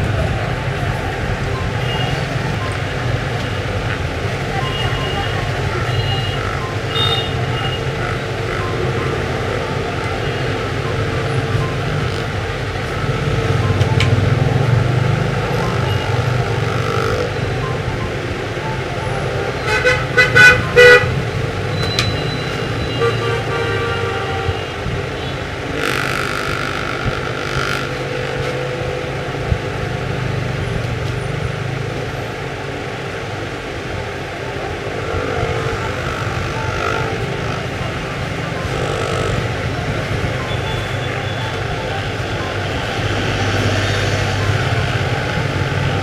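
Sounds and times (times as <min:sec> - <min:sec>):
traffic rumble: 0:00.0 - 0:46.0
vehicle horns honking: 0:04.6 - 0:08.1, 0:19.5 - 0:28.9.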